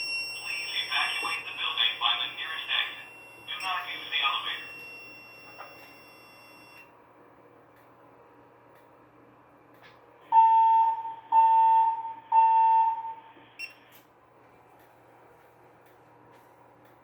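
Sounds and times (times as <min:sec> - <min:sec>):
fire alarm alert tones: 0:00.0 - 0:06.9, 0:10.3 - 0:13.8.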